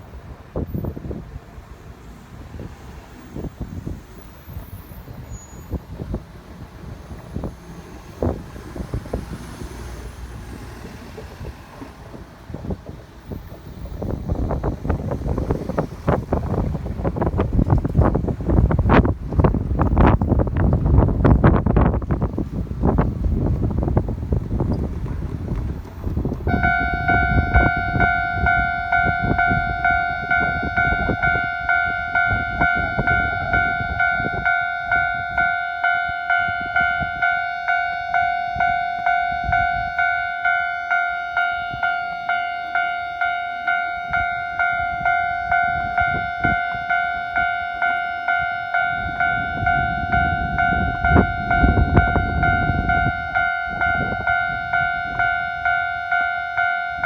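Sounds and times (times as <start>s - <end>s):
wind rumble on microphone: 0.0s - 57.0s
level crossing alarm ringing: 26.5s - 57.0s.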